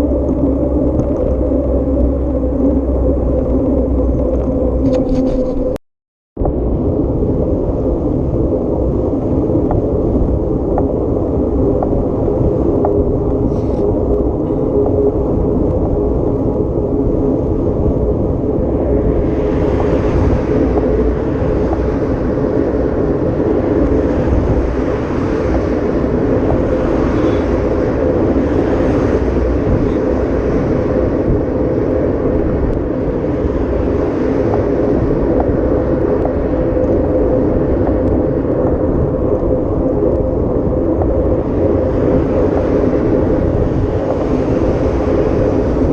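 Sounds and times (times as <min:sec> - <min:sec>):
vehicle engine rumbling: 0:00.0 - 0:05.8, 0:06.4 - 0:45.9.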